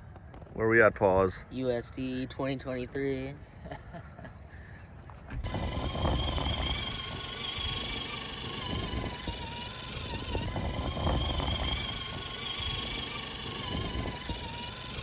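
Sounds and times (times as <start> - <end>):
electric motor and gears whining: 5.2 - 15.0.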